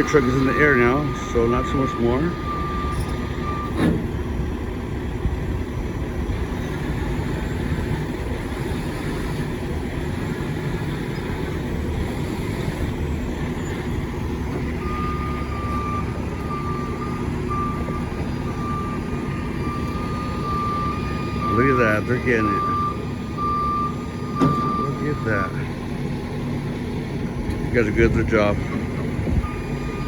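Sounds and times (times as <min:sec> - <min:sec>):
backup alarm beeping: 0:00.0 - 0:03.8, 0:14.8 - 0:25.7, 0:29.4 - 0:30.0
diesel engine running: 0:00.0 - 0:30.0.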